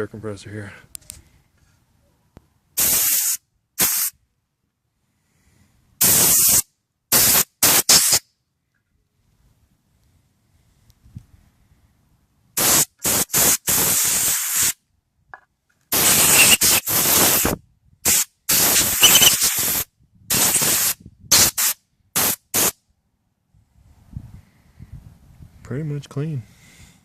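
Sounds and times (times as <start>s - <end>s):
compressed air blasts: 2.8s - 4.2s, 6.0s - 8.3s, 12.6s - 14.8s, 15.9s - 22.8s.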